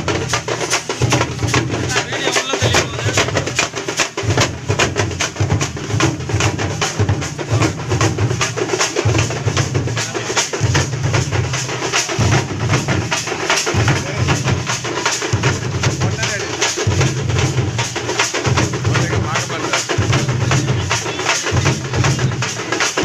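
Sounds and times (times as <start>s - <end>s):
deep low beat: 0.0s - 17.8s
fast drumming: 0.0s - 23.0s.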